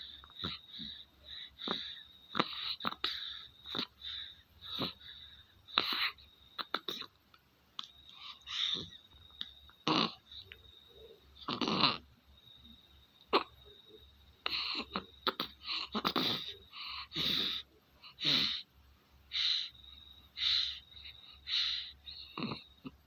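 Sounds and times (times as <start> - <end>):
baby snoring wheezily: 0.0 - 5.0, 9.8 - 10.2, 11.4 - 12.1, 14.5 - 18.6, 21.6 - 22.9.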